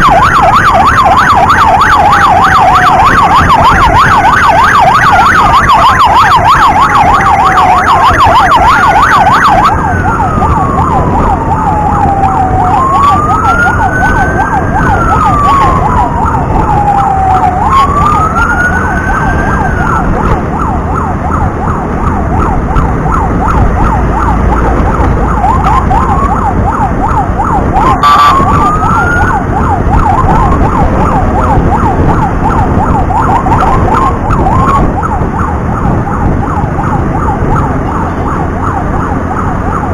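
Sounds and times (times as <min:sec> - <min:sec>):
road and wind noise: 0:00.0 - 0:39.9
siren wailing and whooping: 0:00.0 - 0:39.9
siren yelping: 0:00.0 - 0:39.9.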